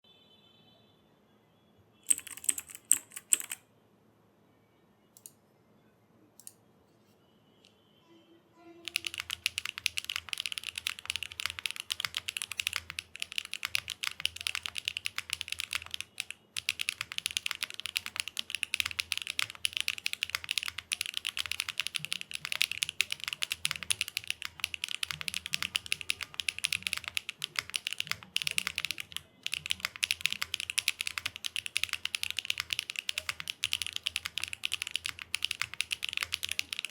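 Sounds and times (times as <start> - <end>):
mechanical keyboard typing: 2.1 - 3.6, 8.9 - 36.9.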